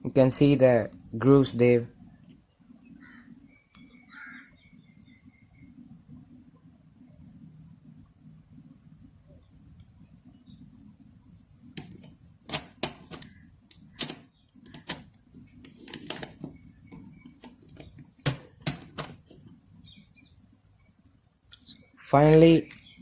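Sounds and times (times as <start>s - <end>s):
plastic puzzle cube clicking: 11.8s - 19.4s.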